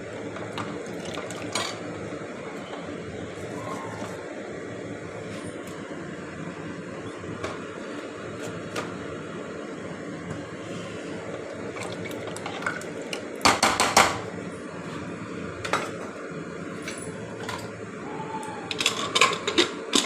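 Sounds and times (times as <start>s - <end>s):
utensils clinking against pot: 18.7s - 20.0s.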